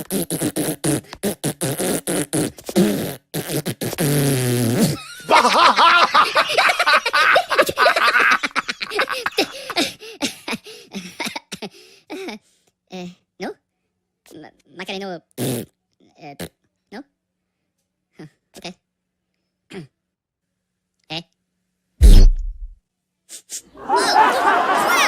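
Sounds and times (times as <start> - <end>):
comic fart sound effects: 0.0 - 5.0, 15.4 - 15.8, 22.0 - 22.7
squeaky cartoon voices: 21.1 - 21.3.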